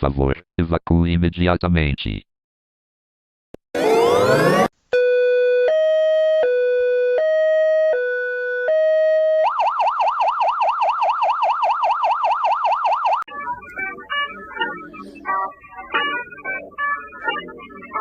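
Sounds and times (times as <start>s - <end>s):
electronic emergency siren: 3.7s - 18.0s
organ music: 13.3s - 18.0s.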